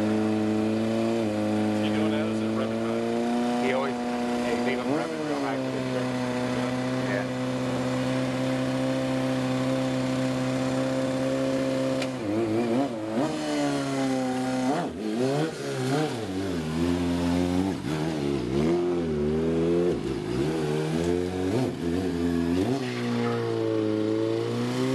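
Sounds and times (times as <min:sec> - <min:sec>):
motorcycle engine idling and revving: 0:00.0 - 0:24.9.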